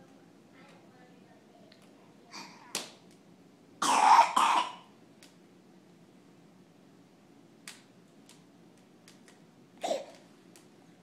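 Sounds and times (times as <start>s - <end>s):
breathy cough: 3.8s - 4.8s, 9.8s - 10.2s.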